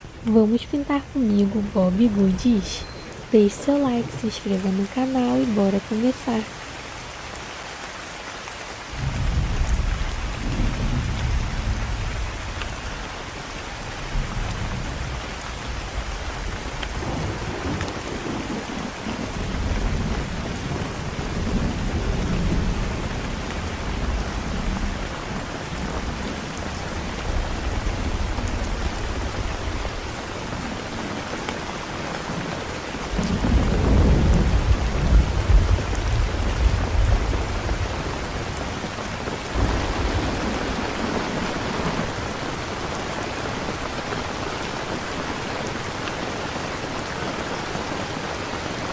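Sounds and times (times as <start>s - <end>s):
steady rain: 0.0s - 48.9s
rolling thunder: 8.9s - 30.9s, 33.1s - 44.1s.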